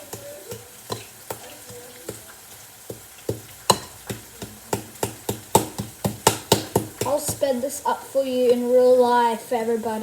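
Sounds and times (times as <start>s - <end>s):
utensil knocking against bowl: 2.9s - 7.4s.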